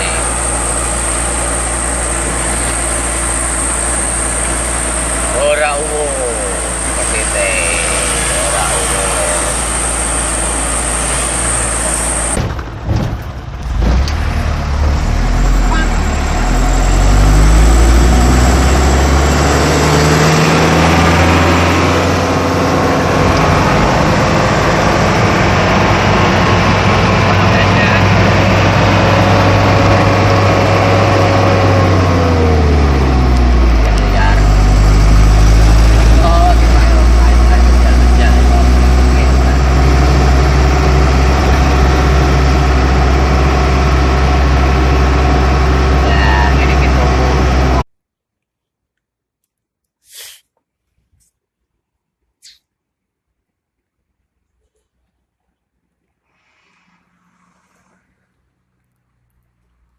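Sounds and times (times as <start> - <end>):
heavy truck engine running: 0.0 - 47.9.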